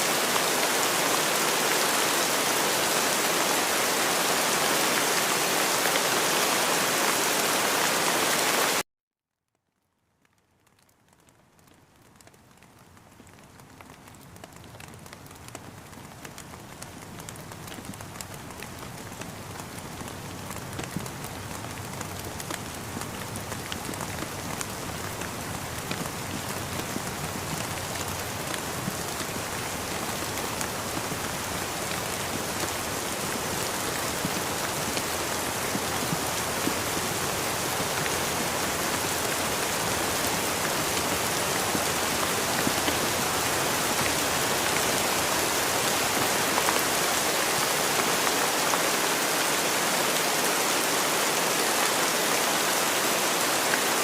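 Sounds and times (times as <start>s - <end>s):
steady rain falling: 0.0s - 8.8s, 9.5s - 54.0s
raindrops tapping: 10.3s - 48.7s.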